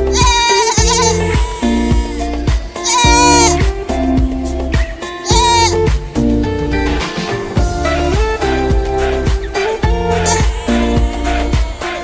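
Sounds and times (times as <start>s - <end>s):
music with beat and bass: 0.0s - 12.0s
goat bleating: 0.1s - 3.7s, 5.2s - 5.9s, 10.0s - 12.0s.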